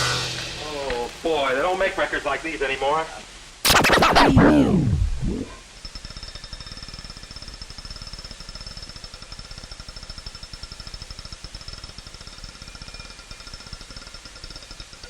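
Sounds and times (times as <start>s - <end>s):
faint high whine: 3.7s - 15.0s
rapid mechanical rattle: 5.6s - 15.0s.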